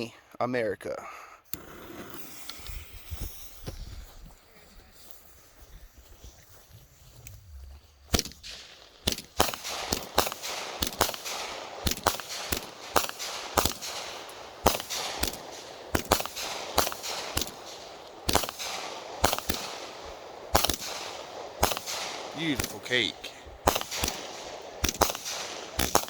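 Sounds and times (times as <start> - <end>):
firework shots banging: 8.1 - 26.0.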